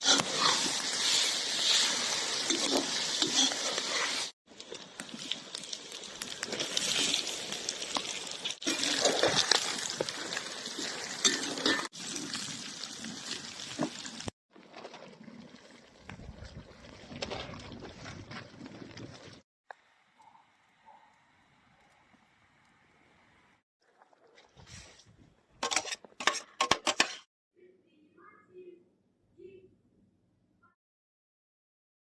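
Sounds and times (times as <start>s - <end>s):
food sizzling in a pot: 0.0s - 14.4s
wood fire crackling: 0.0s - 19.4s.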